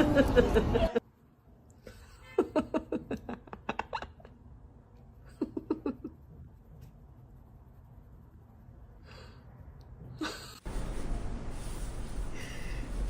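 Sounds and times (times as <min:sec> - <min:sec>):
person giggling: 0:01.9 - 0:04.4, 0:05.2 - 0:06.2.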